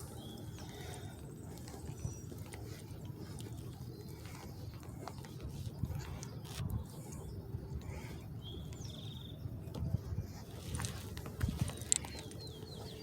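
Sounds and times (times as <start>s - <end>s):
low outdoor rumble: 0.0s - 13.0s.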